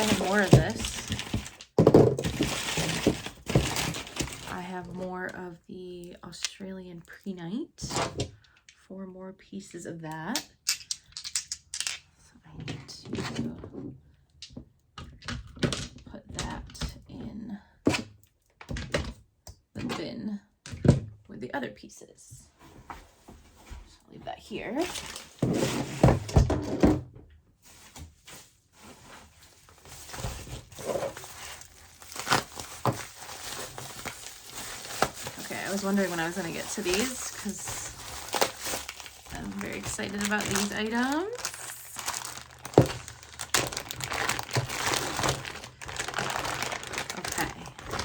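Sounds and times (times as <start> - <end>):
packaging rustling: 0.0 - 5.3, 24.8 - 26.2, 27.6 - 48.0.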